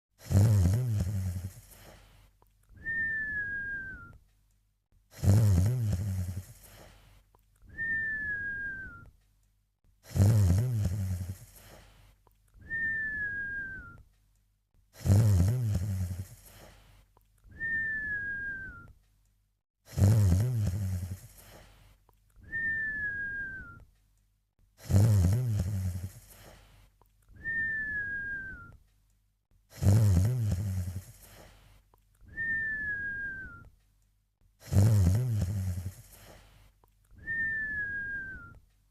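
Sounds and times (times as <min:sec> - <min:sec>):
cartoon snore: 0:00.2 - 0:04.0, 0:05.1 - 0:07.2, 0:10.0 - 0:12.2, 0:14.9 - 0:17.0, 0:19.8 - 0:23.8, 0:24.8 - 0:26.9, 0:29.7 - 0:31.8, 0:34.6 - 0:36.7
thin descending whistle: 0:17.6 - 0:18.9, 0:22.5 - 0:23.8, 0:27.4 - 0:28.8, 0:32.3 - 0:33.7, 0:37.2 - 0:38.6.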